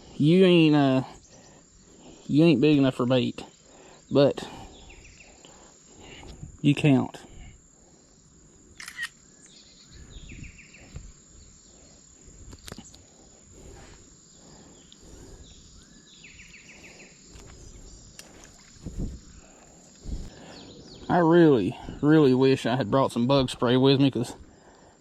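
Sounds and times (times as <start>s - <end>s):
insect buzzing trills: 0.0s - 25.0s
insects whining: 0.0s - 25.0s
sharp clicks: 8.8s - 9.6s.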